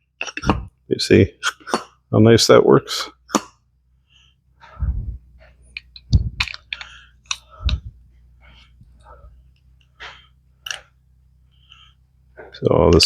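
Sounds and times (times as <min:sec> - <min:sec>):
light clicks of metal parts: 0:05.4 - 0:07.9.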